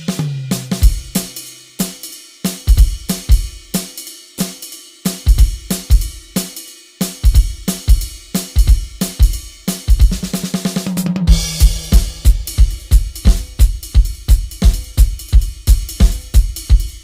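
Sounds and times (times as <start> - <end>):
electronic drum kit groove: 0.0 - 17.0.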